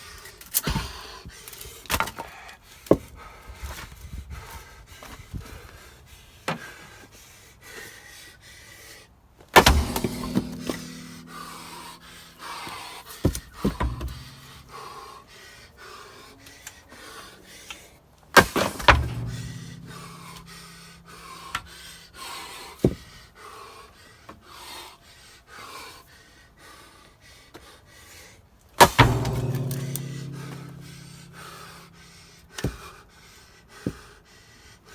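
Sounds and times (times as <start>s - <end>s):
heavy log splitting blows: 9.6s - 14.8s, 18.4s - 21.8s, 28.8s - 32.3s
low ringing: 9.6s - 14.8s, 18.5s - 21.8s, 28.8s - 32.5s.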